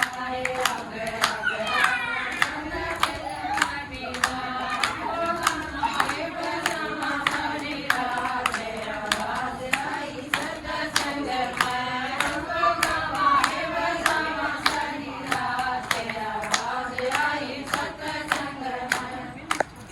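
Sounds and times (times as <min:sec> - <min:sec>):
hand claps: 0:00.0 - 0:19.9
voices singing devotional song: 0:00.0 - 0:19.9.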